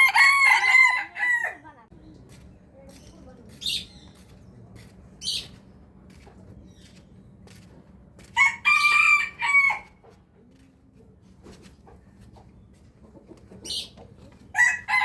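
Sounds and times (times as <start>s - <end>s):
rooster crowing: 0.0s - 1.6s, 8.4s - 10.0s, 14.5s - 15.0s.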